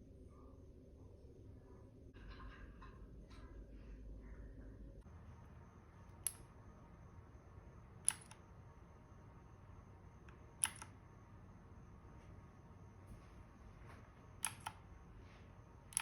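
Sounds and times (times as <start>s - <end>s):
mechanical keyboard key clicks: 8.0s - 8.4s, 10.3s - 10.9s, 14.4s - 14.8s.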